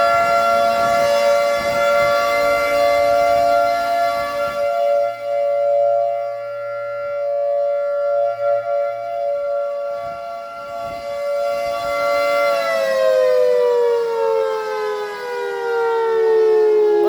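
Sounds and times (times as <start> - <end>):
outdoor warning siren: 0.0 - 17.0.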